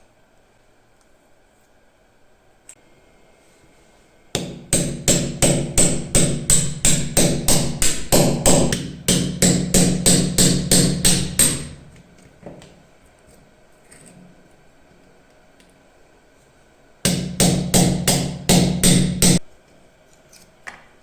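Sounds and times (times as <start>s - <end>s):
hammer striking metal: 4.4s - 11.9s, 17.1s - 19.4s.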